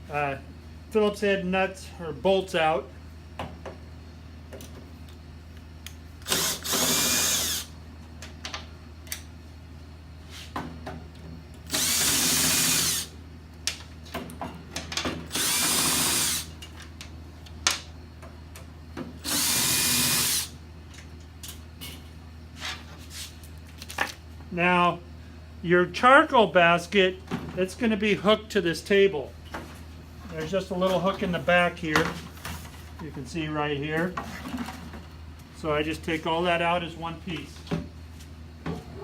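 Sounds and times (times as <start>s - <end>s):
power driver running: 6.2s - 7.8s, 11.6s - 13.2s, 15.3s - 16.6s, 19.2s - 20.6s.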